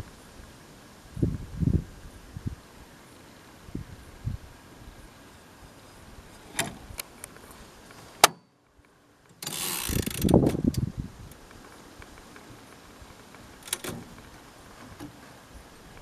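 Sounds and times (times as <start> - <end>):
typewriter mechanical clicks: 9.4 - 10.6.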